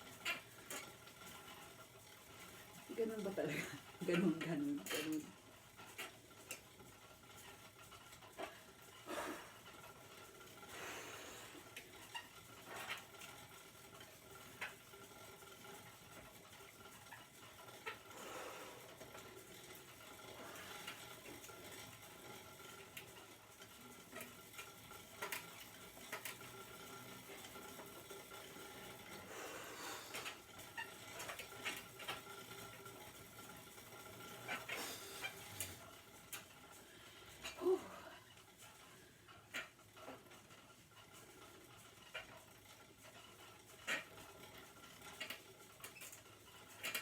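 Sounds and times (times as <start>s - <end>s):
exercise bike whirring: 0.0s - 47.0s.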